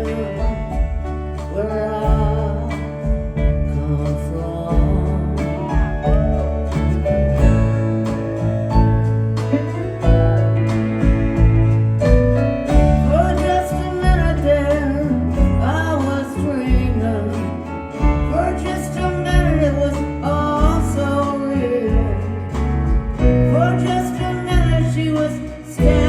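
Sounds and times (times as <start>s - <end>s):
lead vocal singing: 0.0s - 6.6s, 23.5s - 26.0s
guitar: 0.0s - 26.0s
sustained bass notes: 0.0s - 26.0s
drum hits: 4.7s - 14.5s, 18.0s - 18.5s, 21.9s - 23.8s, 25.8s - 26.0s.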